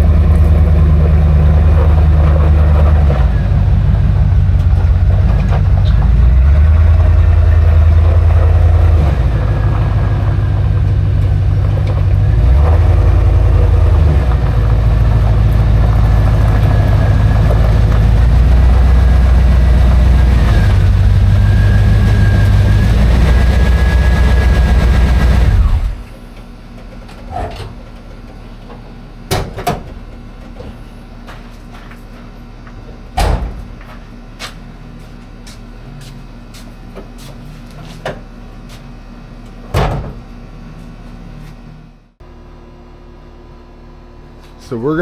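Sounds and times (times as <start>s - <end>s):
car engine running loudly: 0.0s - 26.2s.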